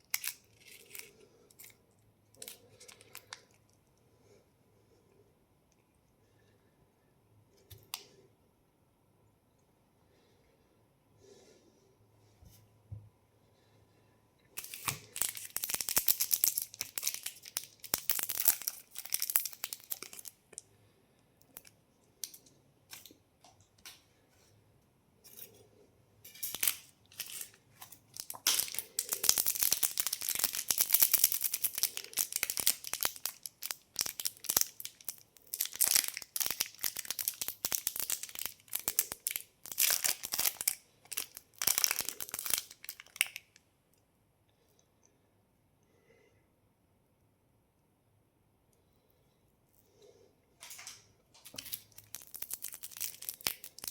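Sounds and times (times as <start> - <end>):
candy wrapper crinkling: 0.0 - 3.8, 14.6 - 20.6, 26.3 - 43.6, 50.7 - 53.9.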